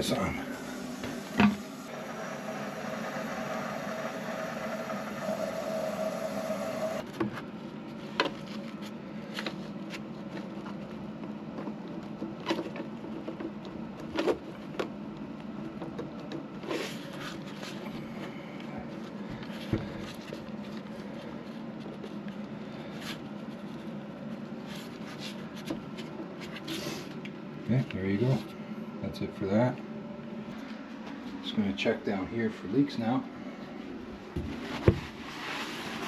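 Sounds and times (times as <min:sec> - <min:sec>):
water hissing into toilet tank: 0:00.4 - 0:07.0.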